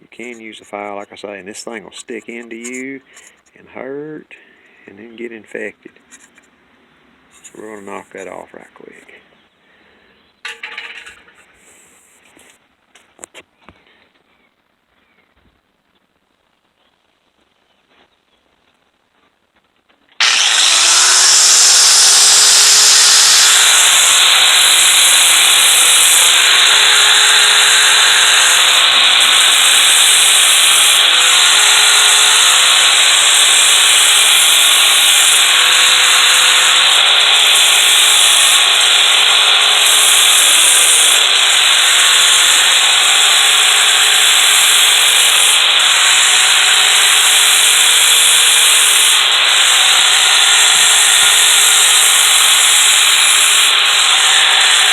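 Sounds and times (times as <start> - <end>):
power tool sanding disc grinding steel: 0.0 - 3.6, 7.3 - 8.4, 10.5 - 12.1, 20.2 - 54.9.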